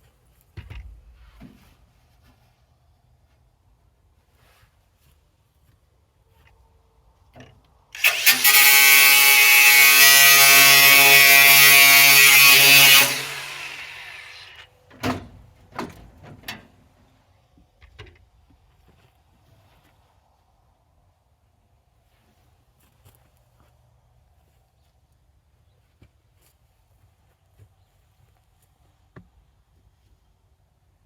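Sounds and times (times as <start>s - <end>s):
angle grinder on metal: 8.0s - 14.6s.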